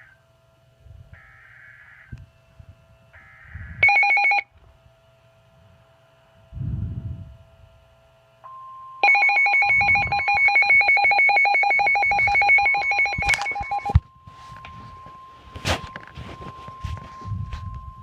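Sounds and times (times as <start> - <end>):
faint steady tone: 0.0 - 18.0
telephone bell ringing: 3.8 - 4.5, 8.5 - 15.6.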